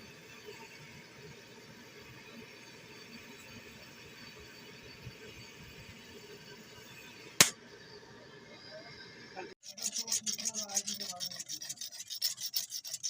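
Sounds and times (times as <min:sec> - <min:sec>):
rapid rasping strokes: 0:09.6 - 0:13.0.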